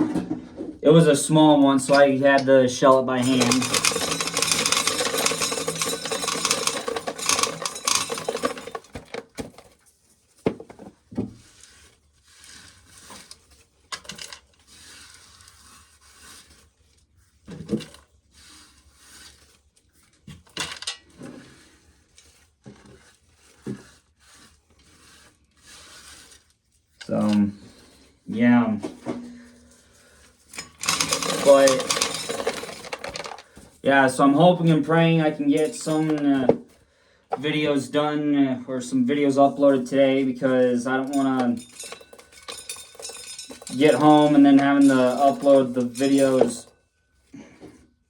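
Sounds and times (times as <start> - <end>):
corn kernels rattling into container: 1.0 - 9.4, 30.6 - 36.4, 38.8 - 46.6.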